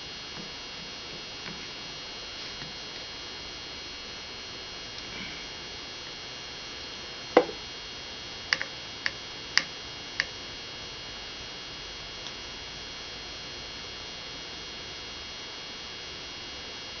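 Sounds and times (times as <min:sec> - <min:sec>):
steady hiss: 0:00.0 - 0:10.9
screwdriver knocking and clicking: 0:08.5 - 0:10.3.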